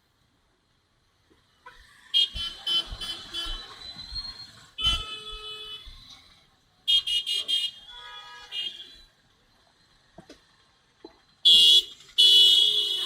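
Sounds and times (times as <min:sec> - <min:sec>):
vehicle horns honking: 0:01.6 - 0:04.2, 0:04.8 - 0:06.2, 0:06.9 - 0:09.1, 0:11.4 - 0:13.0.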